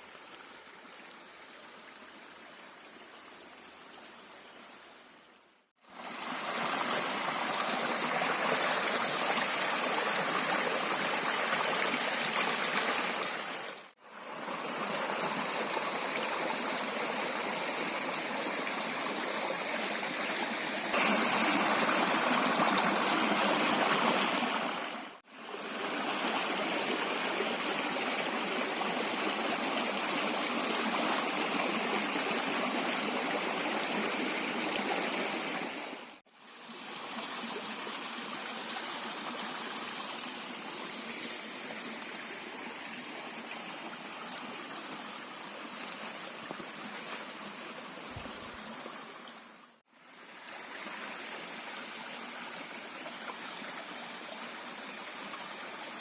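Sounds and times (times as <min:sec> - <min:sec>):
jungle stream rushing: 0:05.8 - 0:56.0.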